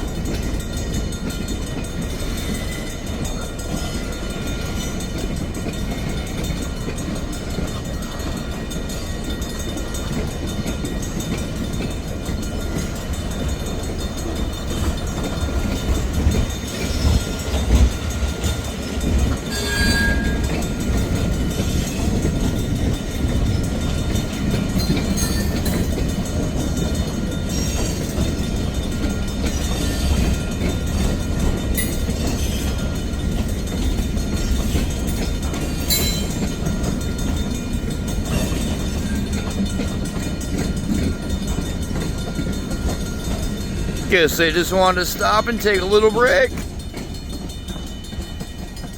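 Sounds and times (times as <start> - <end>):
freight train rumbling on rails: 0.0 - 48.9
high wheel squeal: 19.5 - 20.6.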